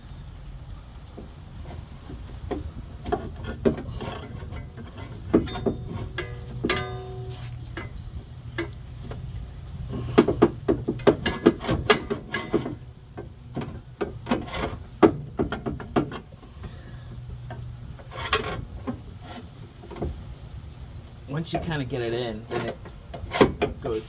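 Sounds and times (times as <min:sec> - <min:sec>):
metal knocks and clanks: 0:01.1 - 0:20.4, 0:21.3 - 0:24.0
metal scraping: 0:01.2 - 0:24.0.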